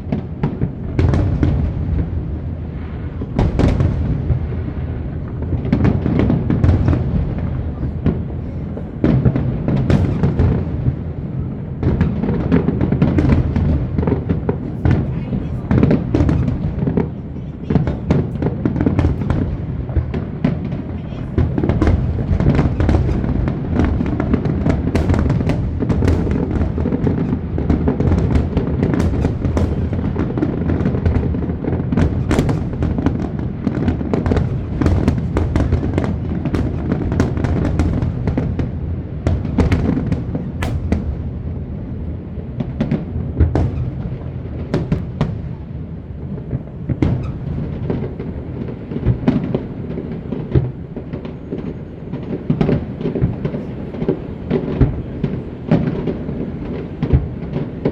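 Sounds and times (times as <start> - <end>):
fireworks bangs and crackles: 0.0 - 57.9.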